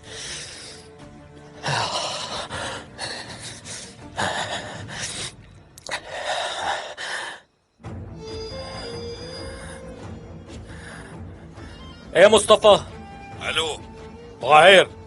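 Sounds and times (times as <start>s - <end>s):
man breathing hard: 0.0s - 7.5s, 8.5s - 11.9s.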